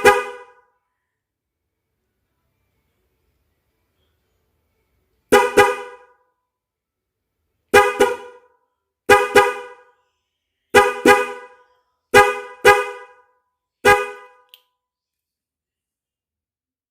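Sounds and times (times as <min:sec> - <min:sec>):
twin-tone car horn toots: 0:00.0 - 0:00.6, 0:05.3 - 0:06.2, 0:07.7 - 0:08.5, 0:09.1 - 0:09.9, 0:10.7 - 0:14.5.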